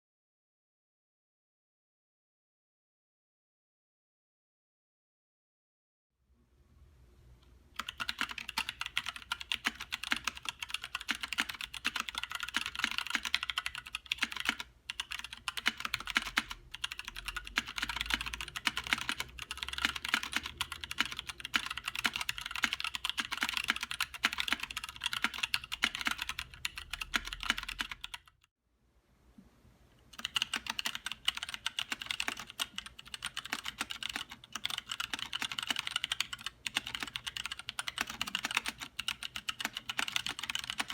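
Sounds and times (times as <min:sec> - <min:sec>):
fast typing on mechanical keyboard: 0:07.8 - 0:28.5, 0:30.2 - 0:40.9.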